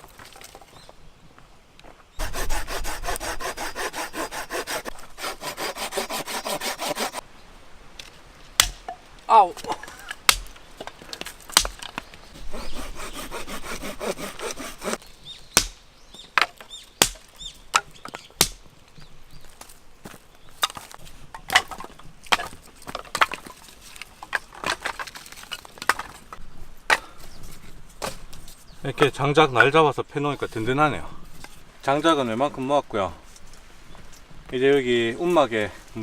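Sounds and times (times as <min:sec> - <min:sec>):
saw rasping through wood: 0:02.2 - 0:07.2, 0:12.4 - 0:15.0
wood splitting strikes and cracks: 0:08.0 - 0:09.0, 0:09.6 - 0:12.5, 0:13.3 - 0:15.8, 0:16.4 - 0:18.7, 0:20.6 - 0:26.2, 0:28.0 - 0:28.4.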